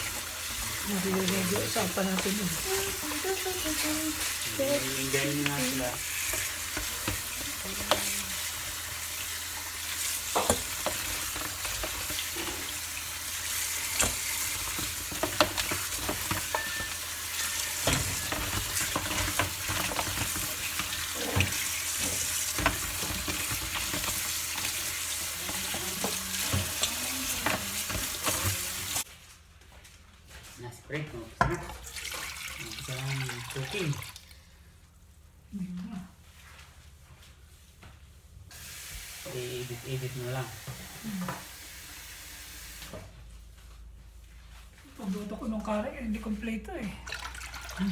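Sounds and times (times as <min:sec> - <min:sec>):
food sizzling in hot oil: 0:00.0 - 0:29.1, 0:38.5 - 0:43.0.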